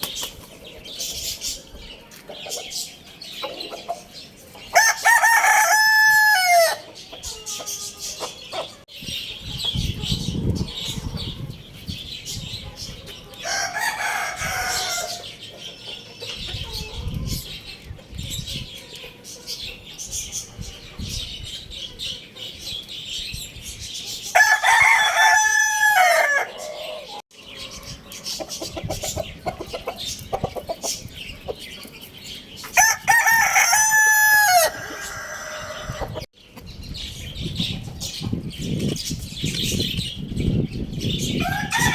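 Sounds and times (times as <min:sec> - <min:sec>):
rooster crowing: 0:04.8 - 0:06.8, 0:13.4 - 0:15.2, 0:24.3 - 0:27.1, 0:32.8 - 0:36.2, 0:41.4 - 0:41.9.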